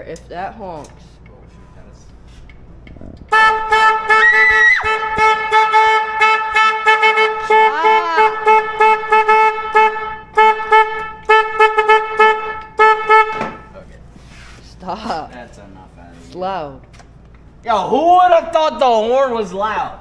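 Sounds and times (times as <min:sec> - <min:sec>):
loud vehicle horn tone: 0:03.3 - 0:14.1
person yelling: 0:06.8 - 0:08.9.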